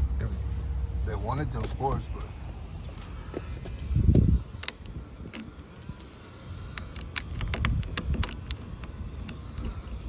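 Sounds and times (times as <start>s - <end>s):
metallic latch clicks and rattles: 4.6s - 10.0s.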